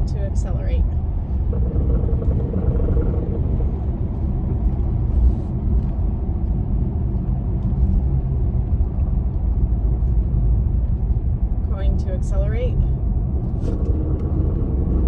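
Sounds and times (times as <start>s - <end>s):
car driving low rumble: 0.0s - 15.0s.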